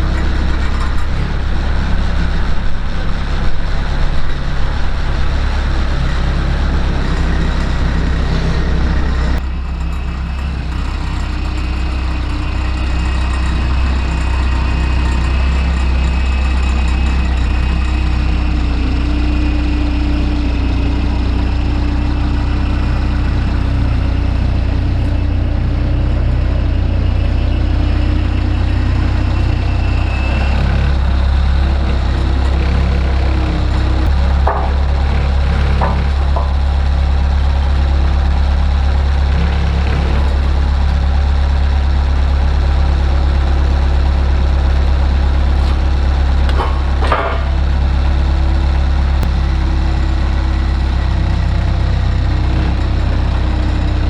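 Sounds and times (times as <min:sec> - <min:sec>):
loader engine running: 0:00.0 - 0:54.0.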